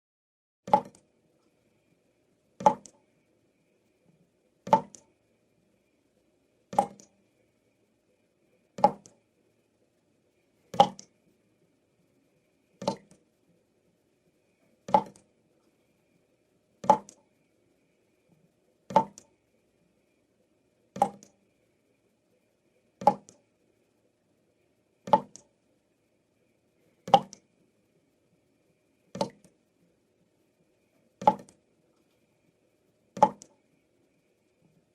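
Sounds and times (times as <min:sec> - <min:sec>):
water dripping from a tap: 0:00.7 - 0:01.0, 0:02.6 - 0:03.0, 0:04.7 - 0:05.0, 0:06.7 - 0:07.1, 0:08.8 - 0:09.2, 0:10.7 - 0:11.1, 0:12.8 - 0:13.2, 0:14.9 - 0:15.2, 0:16.8 - 0:17.2, 0:18.9 - 0:19.3, 0:21.0 - 0:21.4, 0:23.0 - 0:23.4, 0:25.1 - 0:25.5, 0:27.1 - 0:27.4, 0:29.1 - 0:29.5, 0:31.2 - 0:31.6, 0:33.2 - 0:33.5.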